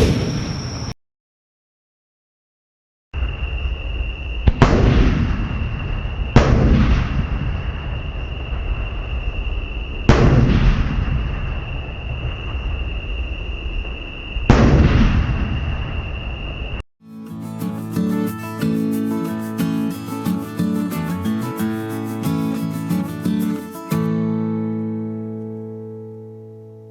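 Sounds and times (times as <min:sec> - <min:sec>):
firework shells booming: 0:00.0 - 0:00.8, 0:04.4 - 0:13.0, 0:14.4 - 0:16.0.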